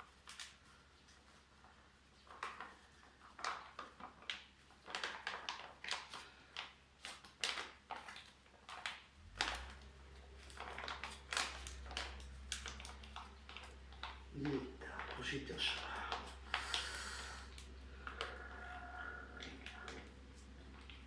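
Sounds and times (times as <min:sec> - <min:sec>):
low steady hum: 0:09.2 - 0:21.0.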